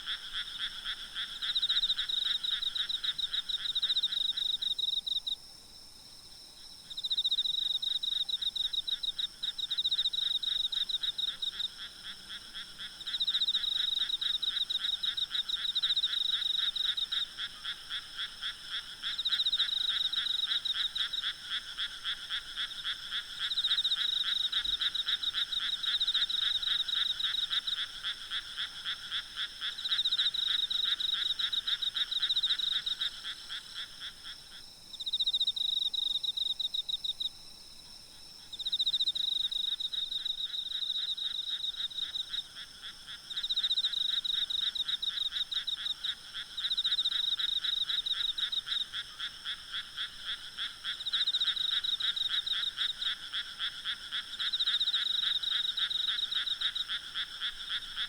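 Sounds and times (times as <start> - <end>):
high pulsing insect calls: 0.0 - 5.4, 6.1 - 58.0
low pulsing frog calls: 0.0 - 5.4, 6.6 - 58.0.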